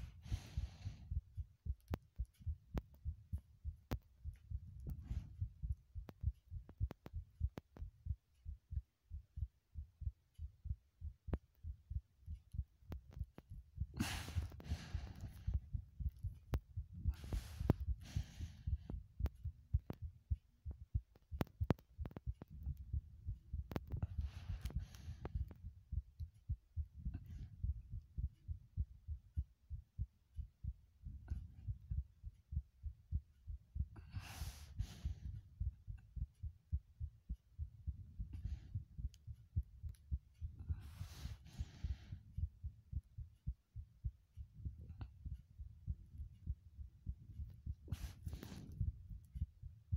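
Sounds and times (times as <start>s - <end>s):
heartbeat thudding: 0.0s - 49.9s.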